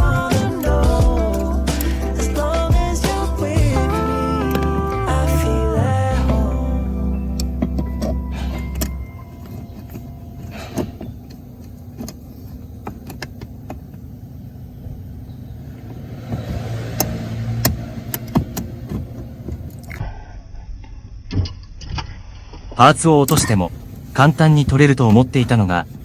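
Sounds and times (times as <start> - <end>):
background music: 0.0 - 10.8
low steady rumble: 0.0 - 20.5.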